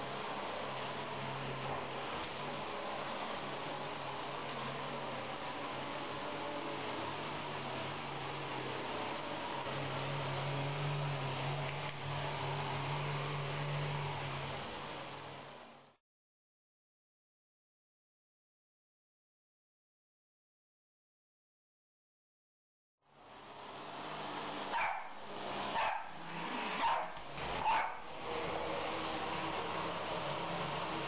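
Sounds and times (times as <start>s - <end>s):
vacuum cleaner motor running: 0.0s - 15.9s, 23.4s - 31.0s
small dog barking: 24.7s - 25.2s, 25.8s - 26.2s, 26.8s - 28.1s.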